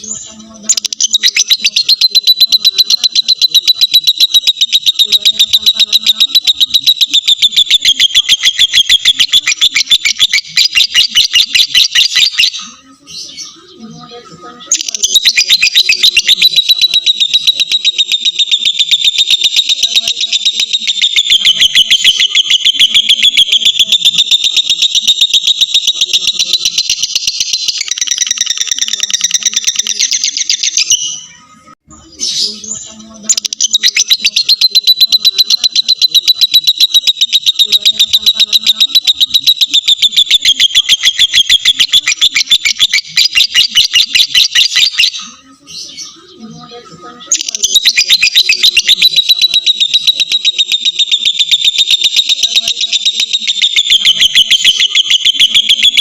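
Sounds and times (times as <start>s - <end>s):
lovebird chattering: 0.0s - 56.0s.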